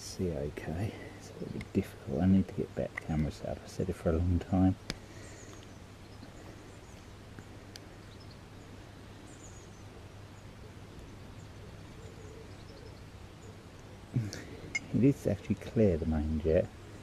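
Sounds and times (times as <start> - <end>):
bird chirps: 4.7 - 15.5.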